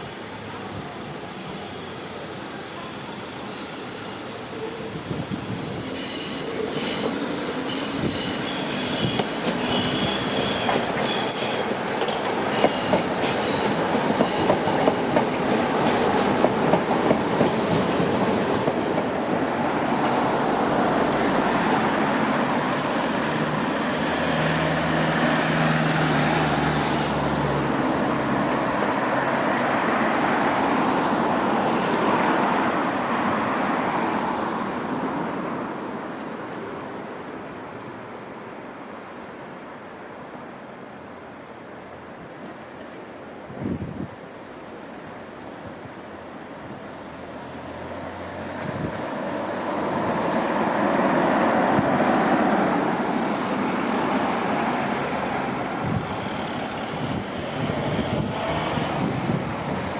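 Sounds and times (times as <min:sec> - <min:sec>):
high-pitched train whine: 0:00.0 - 0:26.2
train wheels clacking over rail joints: 0:06.3 - 0:19.1.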